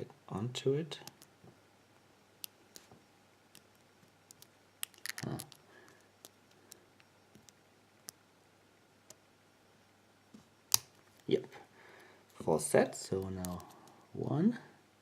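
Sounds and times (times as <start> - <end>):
lock pick clicks: 4.3 - 5.6.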